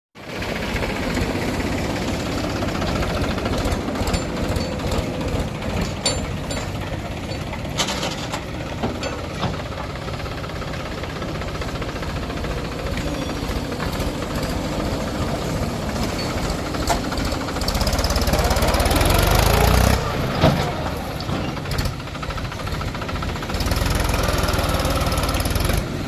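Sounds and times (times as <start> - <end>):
diesel engine running: 0.2 - 26.0
sharp metallic clanks: 2.8 - 10.0, 12.9 - 21.9.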